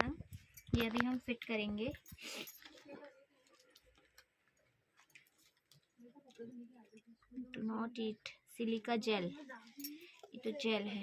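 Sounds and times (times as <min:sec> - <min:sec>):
light clicks of accessories: 0:00.0 - 0:07.3, 0:09.6 - 0:10.4
packaging rustling: 0:02.6 - 0:07.0.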